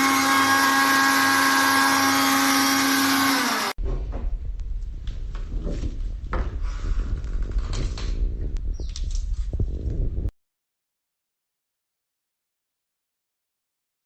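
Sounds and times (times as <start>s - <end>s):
mixer grinder motor whining: 0.0s - 3.8s.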